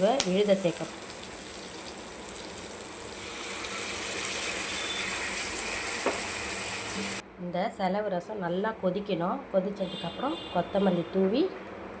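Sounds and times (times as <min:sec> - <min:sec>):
soup sizzling and bubbling: 0:00.0 - 0:07.2.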